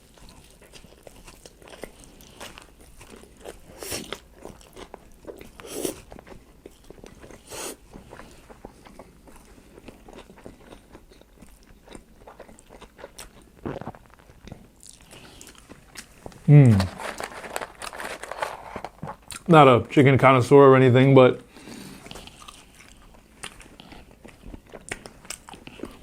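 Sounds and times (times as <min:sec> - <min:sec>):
person chewing food: 0:00.0 - 0:19.5, 0:21.5 - 0:26.0
crunchy bites: 0:11.9 - 0:19.5.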